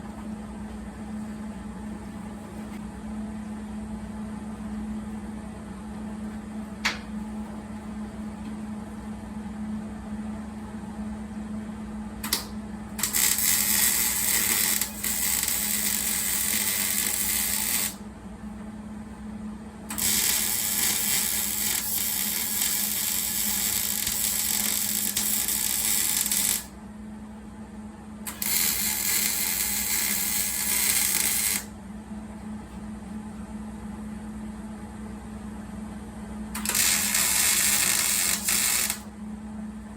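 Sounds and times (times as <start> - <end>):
steady hum: 0.0 - 39.9
arc welding sizzle: 13.0 - 18.0, 19.9 - 26.7, 28.3 - 31.7, 36.6 - 39.1.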